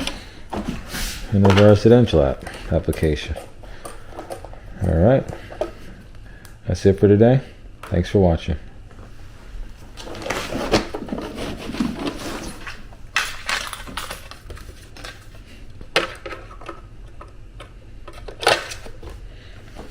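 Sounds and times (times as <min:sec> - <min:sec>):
handling clicks knocks and rustling: 0:00.0 - 0:04.6, 0:10.0 - 0:15.2
low steady hum: 0:00.0 - 0:19.9.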